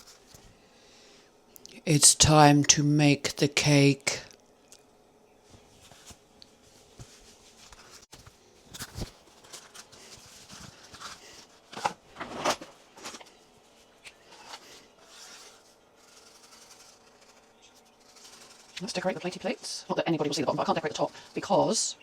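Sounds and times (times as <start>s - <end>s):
scraping strokes: 14.2s - 21.7s.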